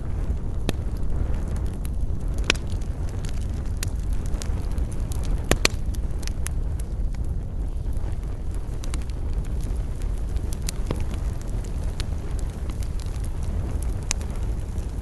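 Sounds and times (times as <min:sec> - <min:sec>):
campfire crackling: 0:00.0 - 0:15.0
low rumble: 0:00.0 - 0:15.0.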